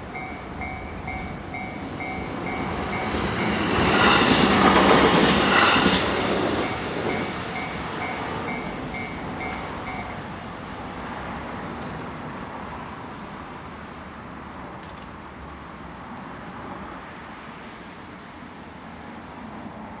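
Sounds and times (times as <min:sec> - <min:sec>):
level crossing alarm: 0:00.1 - 0:03.6, 0:06.6 - 0:10.2.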